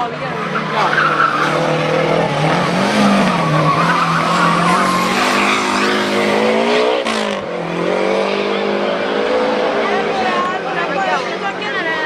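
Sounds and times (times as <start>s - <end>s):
race car engine accelerating: 0.1s - 10.7s
tyre squeal: 0.4s - 1.9s, 2.9s - 6.2s.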